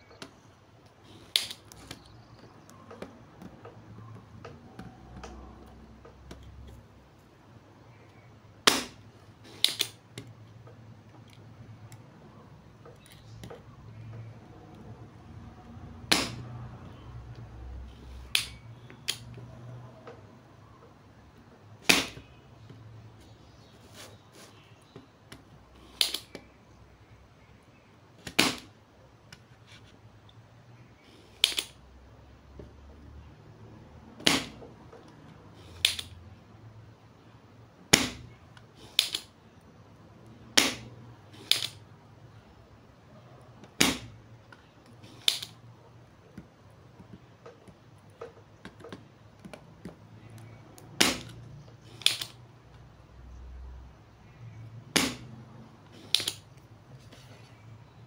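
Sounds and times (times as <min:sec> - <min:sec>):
desoldering pump snapping: 0:01.2 - 0:03.8, 0:25.3 - 0:26.4, 0:35.7 - 0:36.1, 0:38.8 - 0:39.3, 0:44.8 - 0:45.6, 0:47.4 - 0:52.4.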